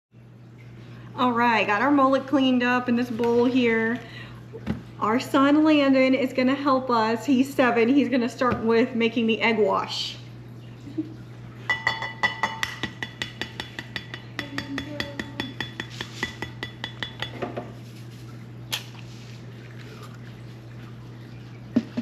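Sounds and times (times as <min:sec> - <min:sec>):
steady low hum: 0:00.2 - 0:22.0
eggs beaten against bowl: 0:11.7 - 0:17.7.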